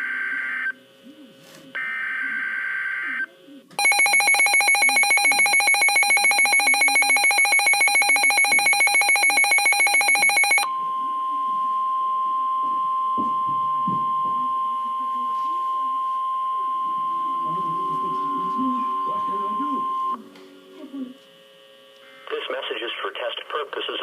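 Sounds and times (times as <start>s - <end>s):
rapid pulsing electronic alarm: 1.8s - 11.0s, 16.0s - 20.2s
steady attention tone: 3.8s - 23.9s.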